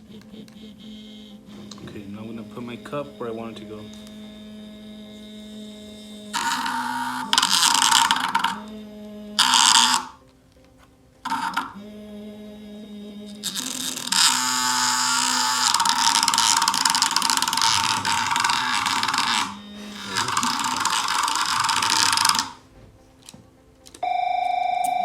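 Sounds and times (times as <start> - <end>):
steady pitched buzz: 0.0 - 10.3, 11.2 - 22.7
vibration motor rattling paper: 6.4 - 8.6, 9.4 - 10.1, 13.4 - 22.6.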